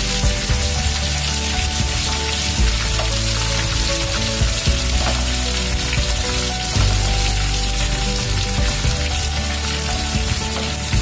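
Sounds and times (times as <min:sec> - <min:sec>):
background music with low notes: 0:00.0 - 0:11.0
onions sizzling in hot oil: 0:00.0 - 0:11.0.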